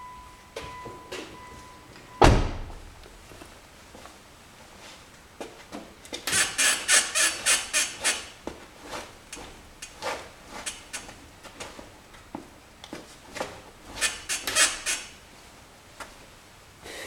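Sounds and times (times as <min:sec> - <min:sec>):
suspension ball joint squeaking: 0:06.3 - 0:08.4, 0:09.8 - 0:11.2, 0:13.9 - 0:15.2.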